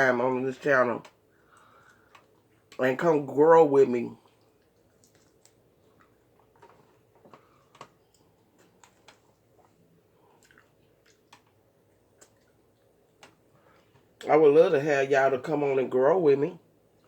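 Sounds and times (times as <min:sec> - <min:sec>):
person chewing: 0:01.0 - 0:02.8, 0:04.2 - 0:14.2
mouth clicks and smacks: 0:04.2 - 0:14.3.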